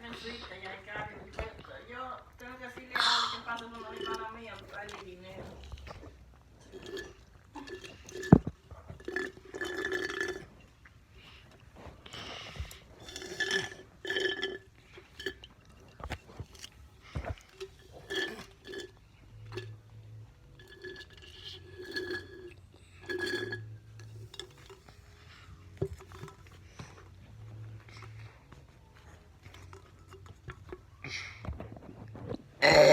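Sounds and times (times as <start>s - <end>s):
glass clinking: 6.6s - 10.7s, 13.0s - 25.2s.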